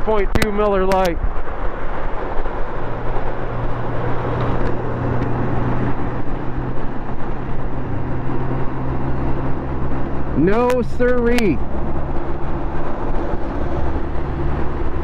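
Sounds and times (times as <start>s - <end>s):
wind and road rush: 0.0s - 15.0s.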